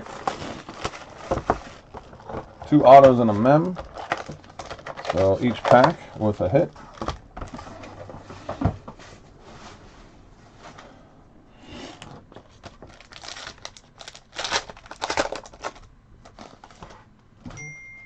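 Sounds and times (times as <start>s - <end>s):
wrapper tearing and crinkling: 0.0s - 6.0s, 12.5s - 16.9s
cards rustling and clicking: 0.0s - 7.6s, 12.4s - 17.0s.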